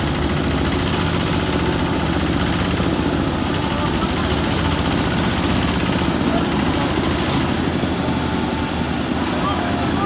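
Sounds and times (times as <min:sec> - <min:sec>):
heavy engine knocking: 0:00.0 - 0:07.3.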